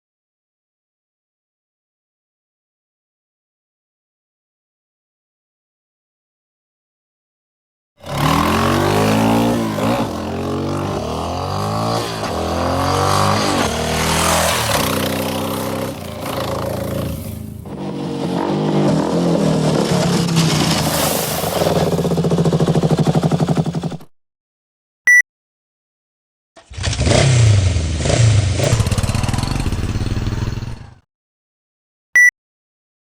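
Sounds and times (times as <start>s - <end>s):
motorcycle engine accelerating: 8.0s - 24.1s, 26.6s - 31.0s.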